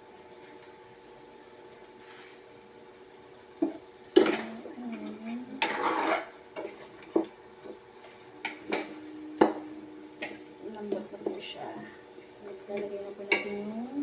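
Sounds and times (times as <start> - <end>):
utensil clanking on cooking pot: 5.6 - 7.8, 12.5 - 13.7.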